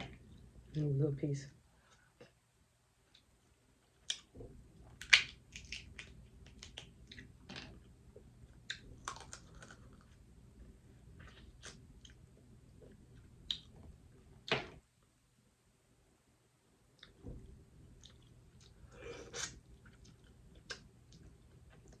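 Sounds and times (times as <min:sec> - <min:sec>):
person chewing food: 0:03.1 - 0:10.2, 0:18.0 - 0:22.0.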